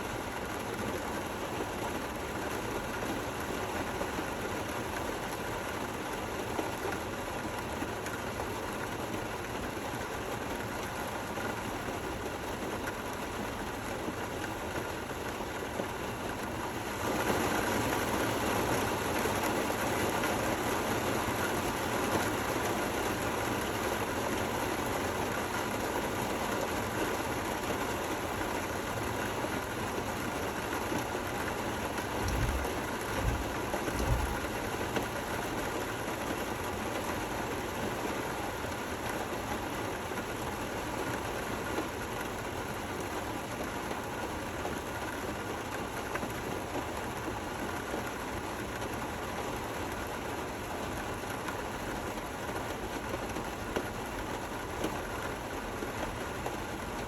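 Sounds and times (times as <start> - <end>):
steady rain falling: 0.0 - 57.0
low thumps: 32.2 - 34.4.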